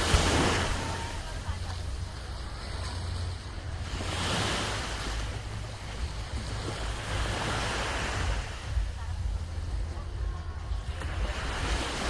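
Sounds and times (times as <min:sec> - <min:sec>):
low wind rumble on microphone: 0:00.0 - 0:12.0
sea waves breaking on shore: 0:00.0 - 0:12.0.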